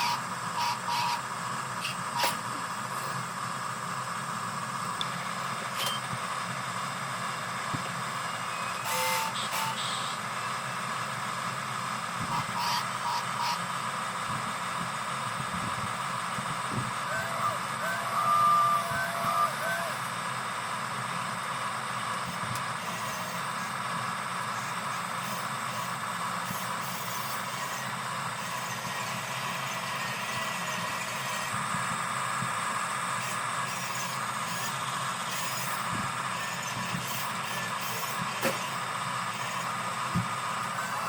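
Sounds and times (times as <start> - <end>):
model machine motors whirring: 0.0 - 3.3, 8.2 - 10.2, 12.2 - 13.7, 22.2 - 23.8, 24.4 - 41.0.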